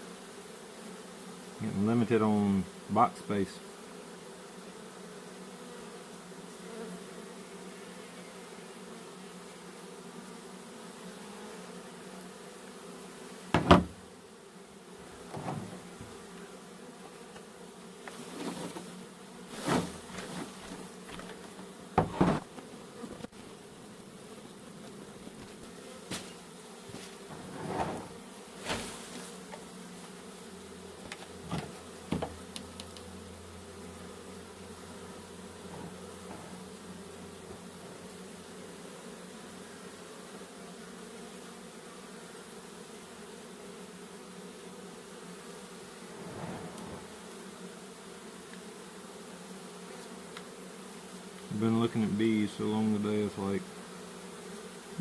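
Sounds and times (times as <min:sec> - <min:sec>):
bees humming: 0:00.0 - 0:55.0
knocks and thumps: 0:13.5 - 0:14.0, 0:15.1 - 0:16.2, 0:19.6 - 0:22.6, 0:25.4 - 0:28.9, 0:31.0 - 0:32.4, 0:35.7 - 0:36.6.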